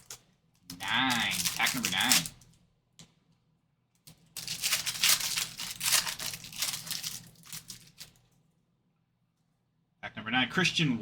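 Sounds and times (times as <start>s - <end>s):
wrapper crinkling and tearing: 0.0s - 0.2s, 0.8s - 2.5s, 4.3s - 8.3s.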